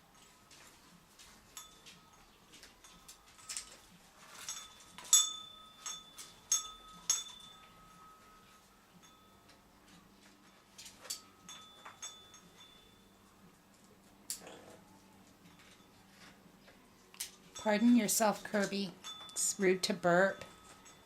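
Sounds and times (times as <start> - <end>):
small metal bell ringing: 1.5 - 13.4, 17.3 - 21.0.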